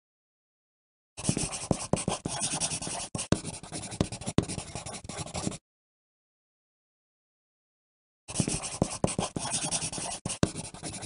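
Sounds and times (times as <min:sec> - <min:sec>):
pencil writing on paper: 0:01.2 - 0:05.6, 0:08.3 - 0:11.0.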